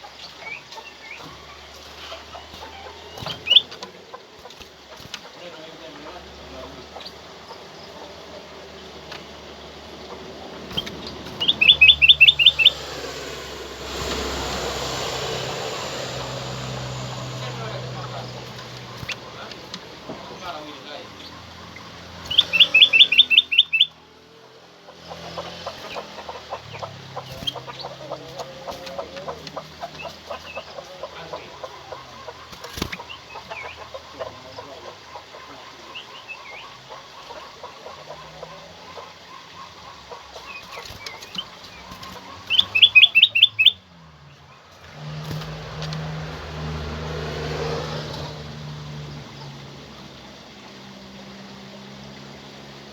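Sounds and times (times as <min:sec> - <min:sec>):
bird chirps: 0:00.0 - 0:04.5, 0:06.8 - 0:24.1, 0:39.3 - 0:43.8
songbird rapid call: 0:00.0 - 0:51.8.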